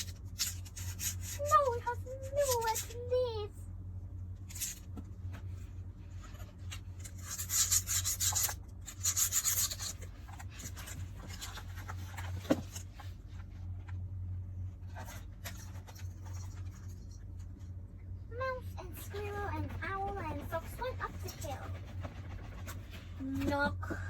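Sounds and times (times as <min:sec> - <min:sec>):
steady low hum: 0:00.0 - 0:24.0
short bursts of rubbing: 0:05.5 - 0:12.4, 0:18.8 - 0:23.2.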